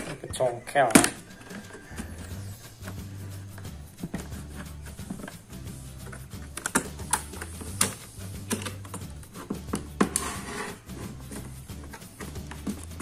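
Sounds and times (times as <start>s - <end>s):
background music: 0.0s - 13.0s
plastic case clips snapping: 6.0s - 10.2s.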